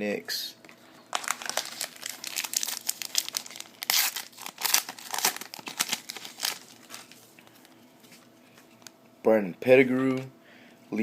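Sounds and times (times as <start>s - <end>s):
foil wrapper tearing and crinkling: 1.1s - 7.2s.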